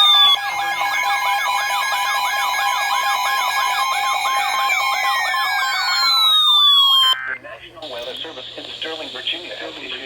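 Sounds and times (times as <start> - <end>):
fast warbling tone: 0.0 - 7.4.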